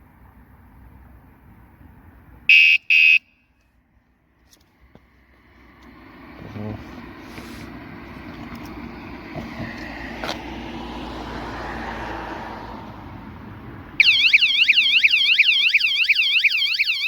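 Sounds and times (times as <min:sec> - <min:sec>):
bike alarm siren warbling: 0:14.0 - 0:17.0.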